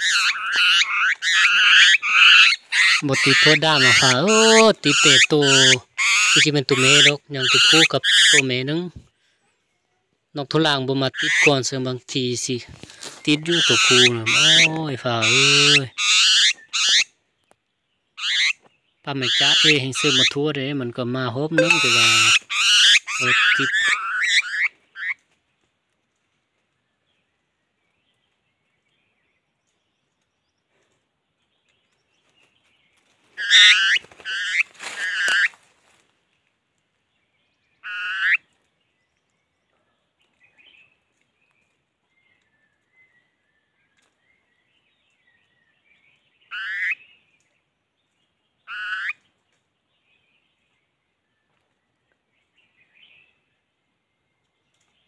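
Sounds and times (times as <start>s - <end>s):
harsh pitched animal calls: 0.0s - 8.4s, 21.6s - 25.1s, 33.4s - 35.6s, 37.8s - 38.4s, 46.5s - 47.0s, 48.7s - 49.2s.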